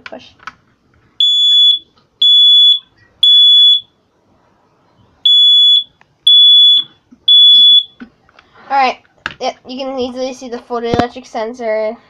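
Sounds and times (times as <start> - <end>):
smoke alarm beeping: 1.2 - 4.0, 5.2 - 8.0.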